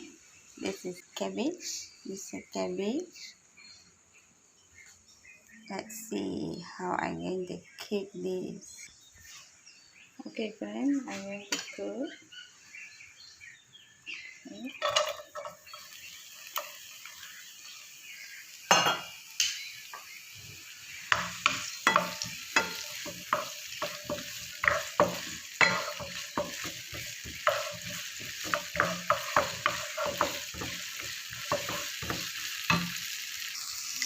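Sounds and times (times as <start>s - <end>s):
food sizzling in hot oil: 14.6s - 34.0s
spatula scraping a pan: 21.0s - 33.1s.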